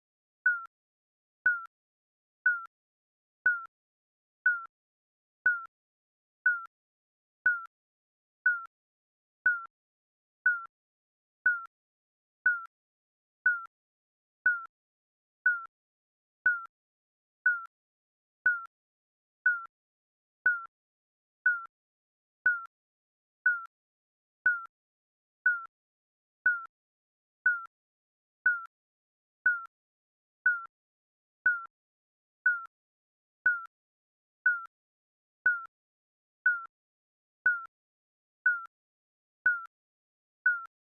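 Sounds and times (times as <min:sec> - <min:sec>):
timer electronic beeps: 0:00.5 - 0:00.7, 0:01.5 - 0:01.7, 0:02.5 - 0:02.7, 0:03.5 - 0:03.7, 0:04.5 - 0:04.7, 0:05.5 - 0:05.7, 0:06.5 - 0:06.7, 0:07.5 - 0:07.7, 0:08.5 - 0:08.7, 0:09.5 - 0:09.7, 0:10.5 - 0:10.7, 0:11.5 - 0:11.7, 0:12.5 - 0:12.7, 0:13.5 - 0:13.7, 0:14.5 - 0:14.7, 0:15.5 - 0:15.7, 0:16.5 - 0:16.7, 0:17.5 - 0:17.7, 0:18.5 - 0:18.7, 0:19.5 - 0:19.7, 0:20.5 - 0:20.7, 0:21.5 - 0:21.7, 0:22.5 - 0:22.7, 0:23.5 - 0:23.7, 0:24.5 - 0:24.7, 0:25.5 - 0:25.7, 0:26.5 - 0:26.7, 0:27.5 - 0:27.7, 0:28.5 - 0:28.7, 0:29.5 - 0:29.7, 0:30.5 - 0:30.7, 0:31.5 - 0:31.7, 0:32.5 - 0:32.7, 0:33.5 - 0:33.7, 0:34.5 - 0:34.7, 0:35.5 - 0:35.7, 0:36.5 - 0:36.7, 0:37.5 - 0:37.7, 0:38.5 - 0:38.7, 0:39.5 - 0:39.7, 0:40.5 - 0:40.7.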